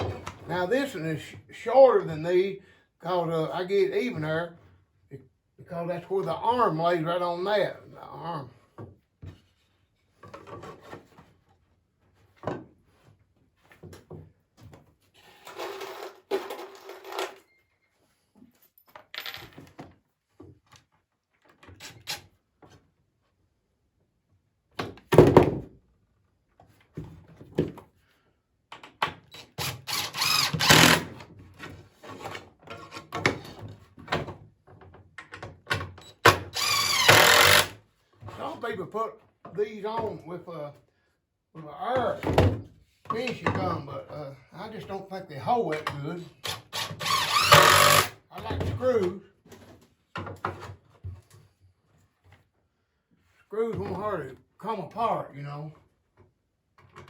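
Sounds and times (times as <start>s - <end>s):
power driver setting screws: 29.5s - 31.1s, 36.2s - 37.8s, 46.4s - 48.2s.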